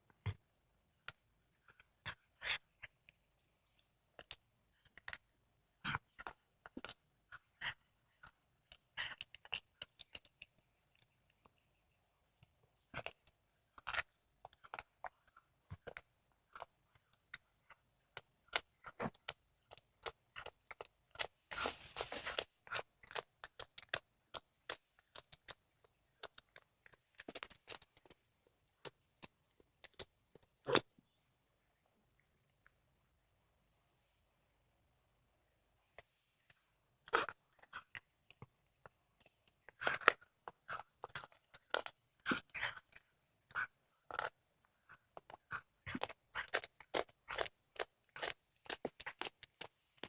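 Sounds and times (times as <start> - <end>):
cat crunching bones: 18.5 - 28.2, 39.3 - 49.8.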